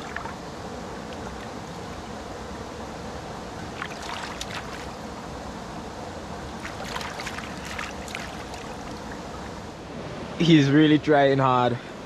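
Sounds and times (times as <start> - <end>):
river water rushing: 0.0 - 10.5
short ticks and splashes: 3.8 - 4.9, 6.6 - 9.2.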